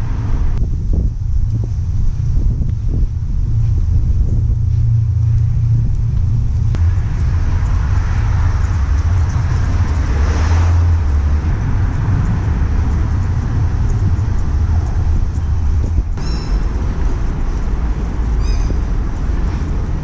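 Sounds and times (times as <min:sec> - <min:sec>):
steady low rumble: 0:00.0 - 0:20.0
vehicle passing by: 0:04.7 - 0:20.0.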